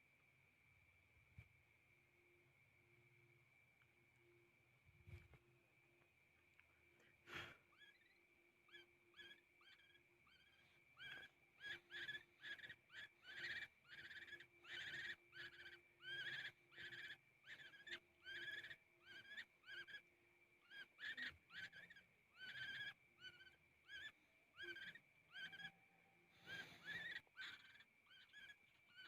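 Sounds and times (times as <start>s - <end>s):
young woodpecker calling: 7.3s - 29.0s.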